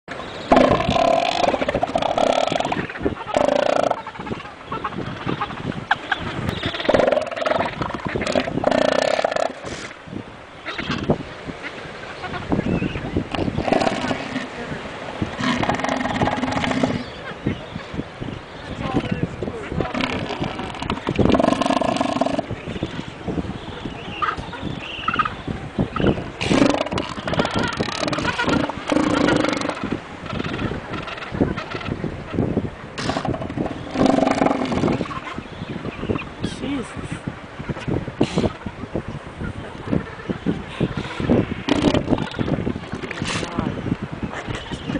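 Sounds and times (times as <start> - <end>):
elephant seal belching calls: 0.5 - 4.4, 6.6 - 10.0, 13.3 - 14.6, 15.3 - 17.2, 19.8 - 22.9, 26.4 - 31.9, 33.0 - 35.5, 40.3 - 42.5.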